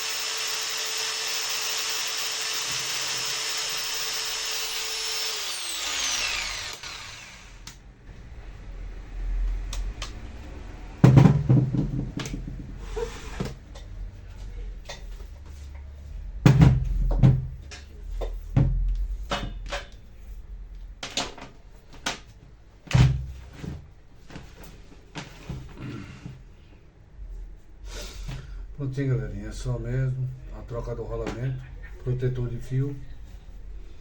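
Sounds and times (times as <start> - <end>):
objects knocking on a workbench: 11.0 - 12.8, 16.4 - 17.6.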